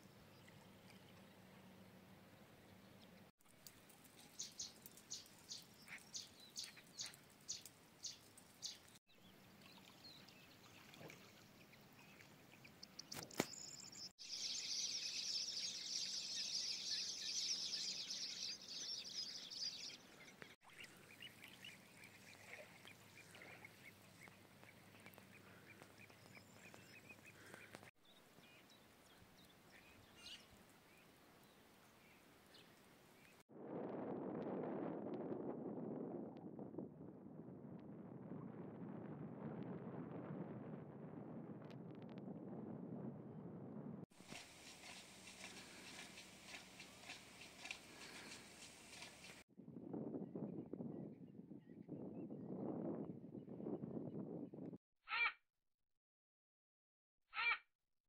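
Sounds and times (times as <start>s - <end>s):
wild birds calling: 14.2s - 27.9s, 44.3s - 49.4s.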